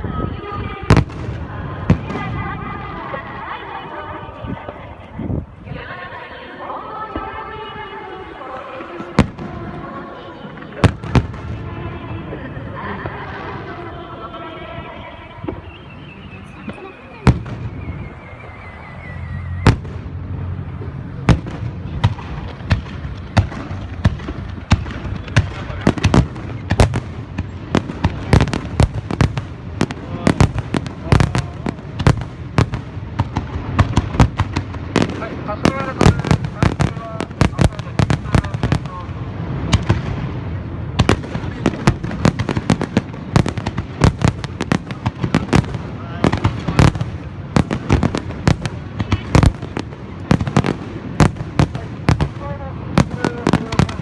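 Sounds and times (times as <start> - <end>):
continuous low rumble: 0.0 - 54.0
fireworks bangs: 0.0 - 54.0
low rumble: 17.2 - 27.4.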